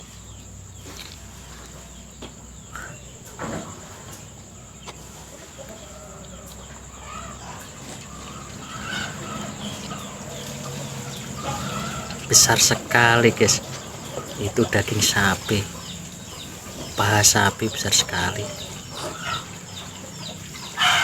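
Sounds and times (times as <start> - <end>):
short animal calls: 5.0 - 21.0.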